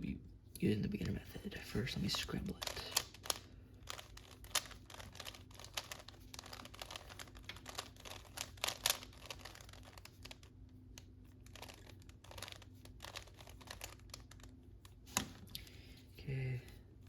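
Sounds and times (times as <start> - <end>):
puzzle cube clicking: 2.6 - 14.5.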